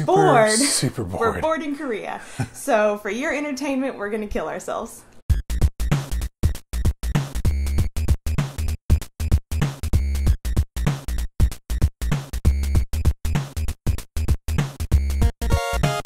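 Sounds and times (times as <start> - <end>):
electronic music with drum-machine beat: 5.3 - 11.2, 11.8 - 13.6, 14.5 - 16.0.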